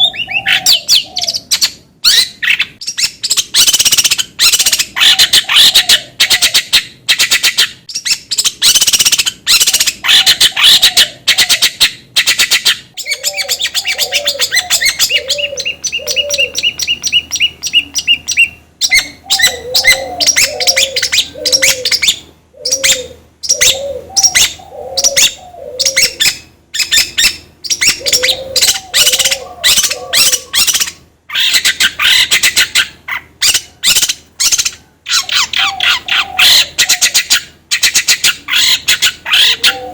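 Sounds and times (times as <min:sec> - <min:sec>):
dove-like cooing: 0:00.0 - 0:01.6, 0:05.0 - 0:06.6, 0:10.1 - 0:11.7, 0:13.0 - 0:26.4, 0:27.8 - 0:30.8, 0:35.2 - 0:37.4, 0:38.0 - 0:39.9
harsh scratchy bird chattering: 0:00.0 - 0:39.9.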